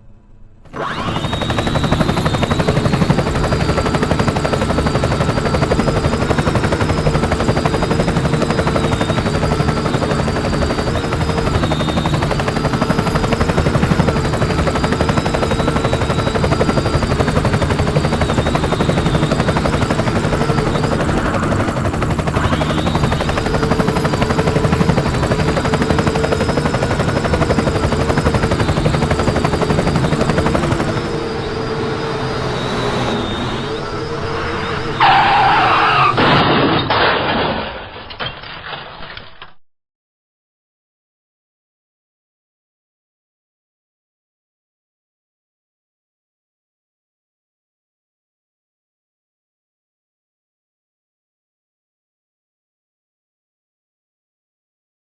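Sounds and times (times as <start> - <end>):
drone propellers buzzing: 0.7 - 36.2.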